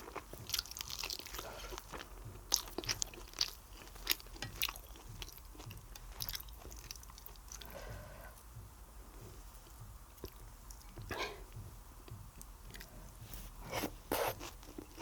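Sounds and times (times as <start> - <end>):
person chewing crunchy food: 0.0 - 8.4, 12.7 - 13.1, 13.7 - 15.0.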